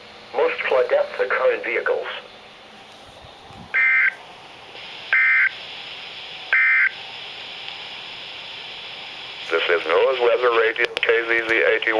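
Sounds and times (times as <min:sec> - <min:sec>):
receiver hiss: 0:00.0 - 0:11.9
two-tone digital buzzes: 0:03.8 - 0:04.2, 0:05.1 - 0:05.6, 0:06.5 - 0:07.0.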